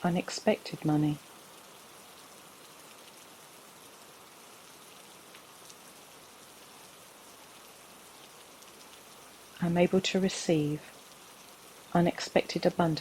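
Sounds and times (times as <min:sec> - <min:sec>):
steady rain falling: 0:00.0 - 0:13.0.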